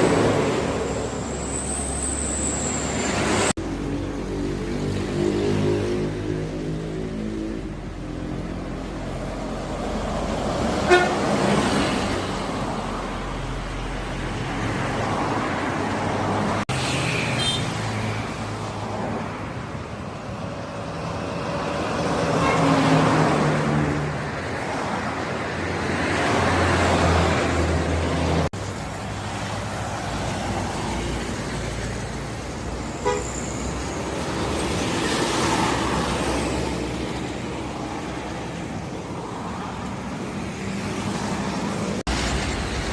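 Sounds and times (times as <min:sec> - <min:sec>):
buses passing on road: 0:00.0 - 0:42.9
bus horn toots: 0:10.8 - 0:11.4, 0:22.3 - 0:22.9, 0:33.0 - 0:33.5.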